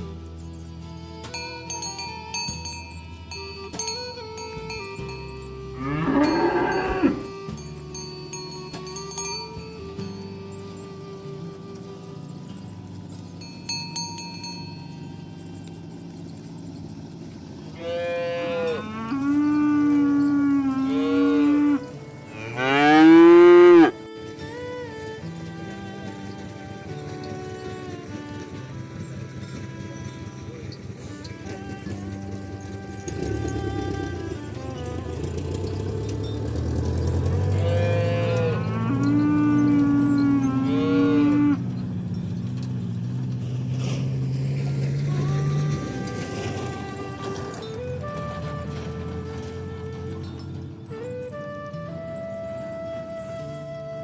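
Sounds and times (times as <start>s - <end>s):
cow mooing: 5.7s - 7.5s, 17.6s - 24.0s, 37.1s - 41.8s.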